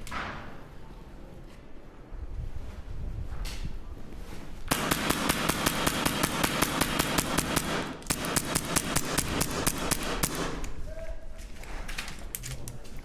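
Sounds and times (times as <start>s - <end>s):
airsoft gun rapid fire: 4.7s - 10.7s.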